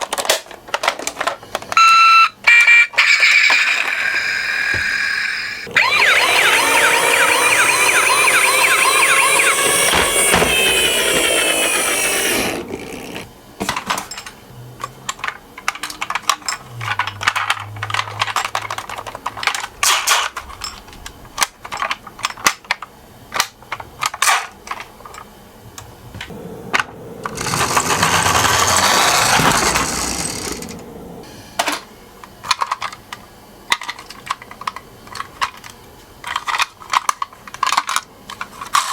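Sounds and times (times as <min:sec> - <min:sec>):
toy electronic siren wailing: 0:01.8 - 0:13.2
toy cars clicking and rolling: 0:02.5 - 0:13.3, 0:14.8 - 0:25.3, 0:27.3 - 0:30.8, 0:33.7 - 0:38.9.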